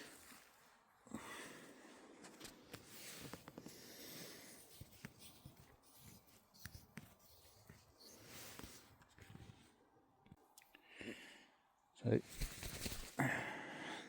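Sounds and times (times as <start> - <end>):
soft rustling: 12.2 - 13.2.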